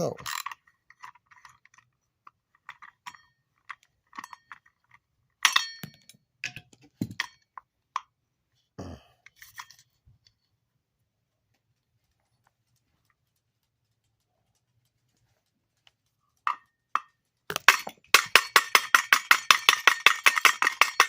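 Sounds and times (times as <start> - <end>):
metal and plastic parts clinking: 0.0 - 7.6, 16.4 - 21.0.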